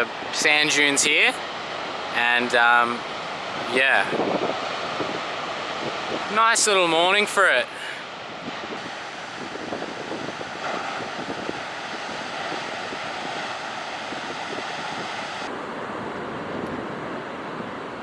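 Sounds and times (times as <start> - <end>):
ocean surf: 0.0 - 18.0
wind buffeting microphone: 0.0 - 18.0.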